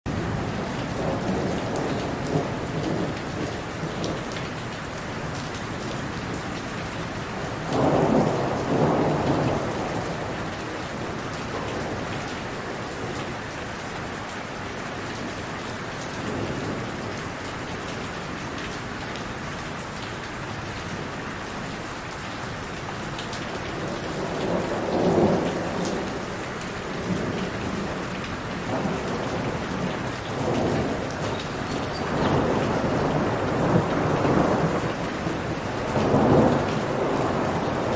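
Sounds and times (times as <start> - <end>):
thunder rumbling: 0.1 - 4.4, 7.5 - 13.3, 23.4 - 37.9
heavy rain falling: 0.1 - 37.9.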